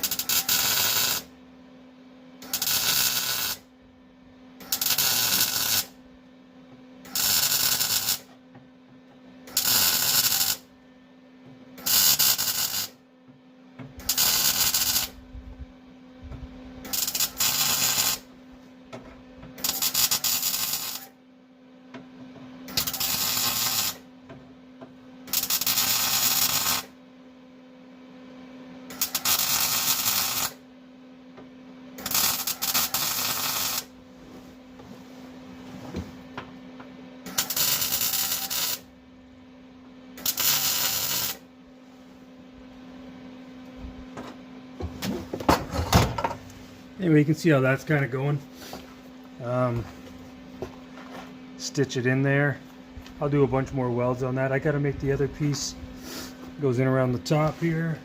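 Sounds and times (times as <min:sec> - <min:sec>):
welding arc sizzling: 0:00.0 - 0:01.4, 0:02.4 - 0:03.7, 0:04.6 - 0:06.0, 0:07.0 - 0:08.3, 0:09.4 - 0:10.7, 0:11.8 - 0:13.0, 0:14.0 - 0:15.2, 0:16.8 - 0:18.3, 0:19.6 - 0:21.2, 0:22.7 - 0:24.0, 0:25.2 - 0:27.0, 0:28.9 - 0:30.6, 0:32.0 - 0:34.0, 0:37.3 - 0:39.0, 0:40.2 - 0:41.5.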